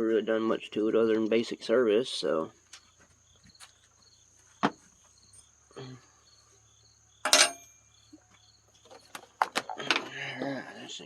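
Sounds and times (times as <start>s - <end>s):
crickets chirping: 0.0s - 11.0s
hand tools clattering: 7.2s - 7.8s.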